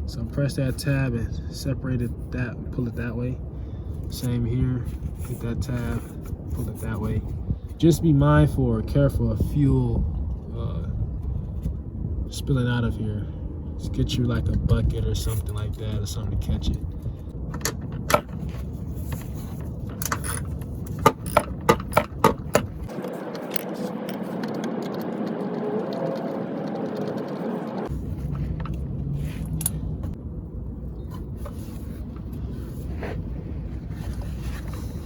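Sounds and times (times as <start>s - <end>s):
light scraping and handling: 4.0s - 7.9s, 15.1s - 24.7s, 31.0s - 35.0s.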